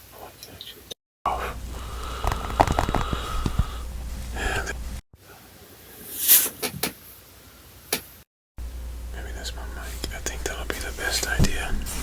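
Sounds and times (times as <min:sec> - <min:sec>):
breathy puff into microphone: 0:01.8 - 0:04.7
light taps and clicks: 0:10.0 - 0:11.7.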